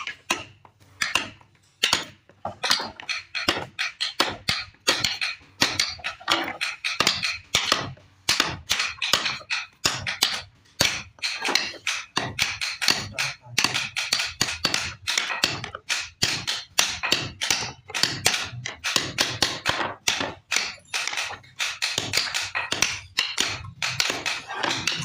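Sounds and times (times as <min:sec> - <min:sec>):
hand tools striking wood: 0:00.0 - 0:25.0.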